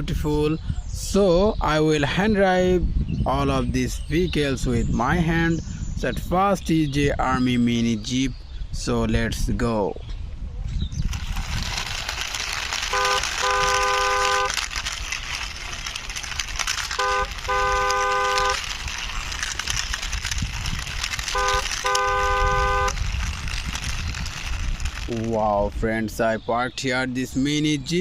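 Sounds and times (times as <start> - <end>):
toy wheels rolling on rough ground: 10.8 - 28.0
toy vehicle horn tooting: 11.4 - 24.6.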